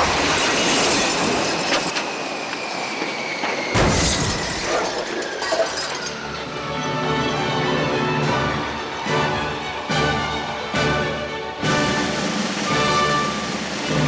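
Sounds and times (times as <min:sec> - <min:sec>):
glass and metal shattering: 0:03.8 - 0:06.4
music: 0:06.1 - 0:14.0.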